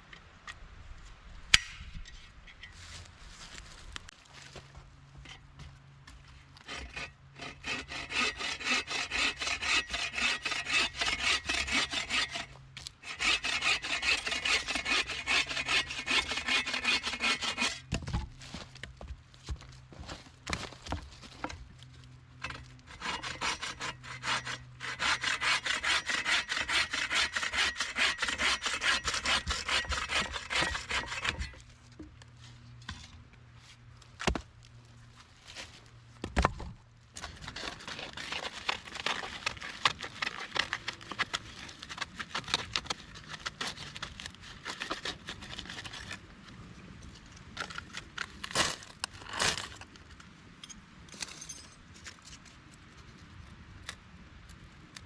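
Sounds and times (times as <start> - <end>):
hand saw cutting wood: 6.6 - 18.0, 22.4 - 31.6, 37.2 - 46.2.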